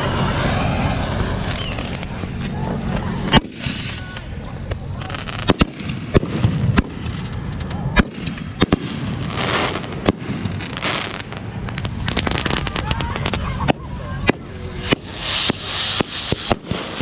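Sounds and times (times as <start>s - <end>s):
fireworks hissing: 0.0s - 5.6s, 10.5s - 17.0s
fireworks bangs: 0.0s - 17.0s.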